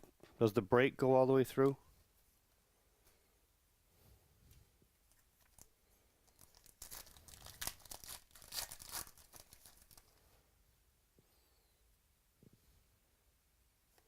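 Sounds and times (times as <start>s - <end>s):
wrapper crackling: 5.4s - 10.2s.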